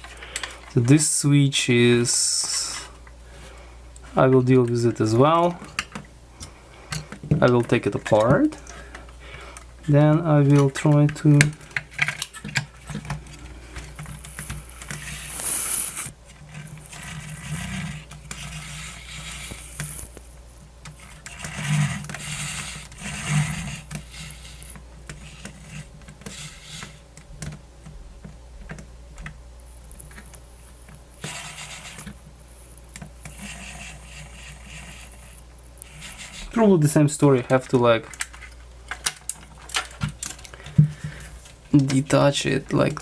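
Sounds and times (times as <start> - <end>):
scraping and rubbing on plastic: 10.6 - 20.4, 21.0 - 27.0, 29.7 - 37.0.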